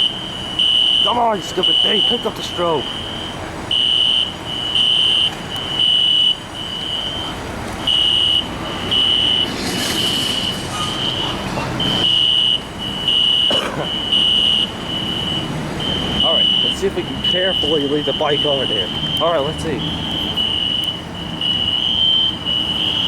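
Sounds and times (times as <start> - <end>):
fire alarm horns beeping: 0.0 - 23.0
brief rush of noise: 9.3 - 11.6.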